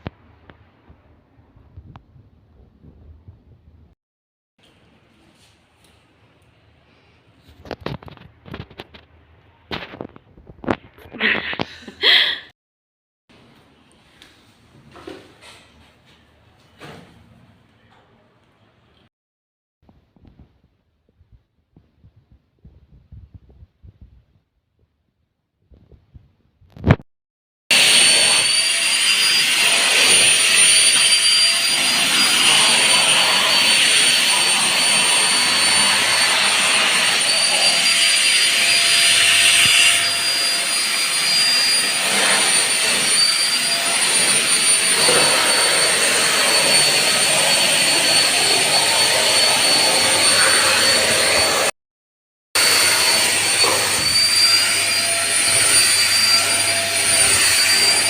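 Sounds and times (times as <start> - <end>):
vacuum cleaner running: 27.7 - 51.7, 52.6 - 58.0.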